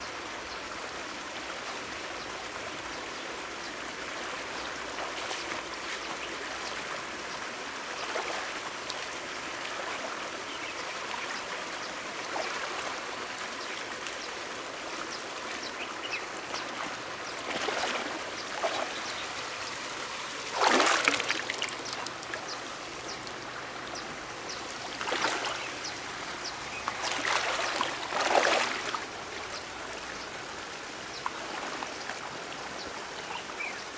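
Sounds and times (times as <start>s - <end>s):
river water flowing: 2.6s - 33.9s
water splashes: 4.2s - 10.6s, 16.4s - 33.9s.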